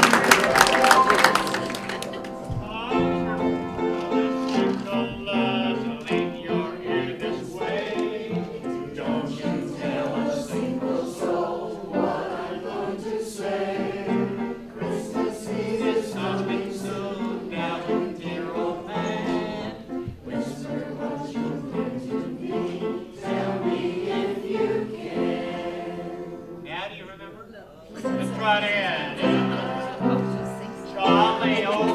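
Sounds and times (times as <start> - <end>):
group singing a carol: 0.2 - 26.8, 27.9 - 31.9.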